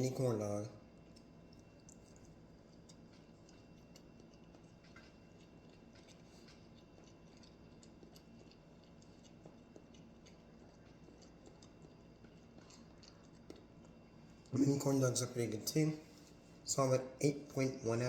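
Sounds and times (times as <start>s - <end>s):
low steady hum: 0.0s - 18.0s
faint eating clicks: 0.9s - 14.6s.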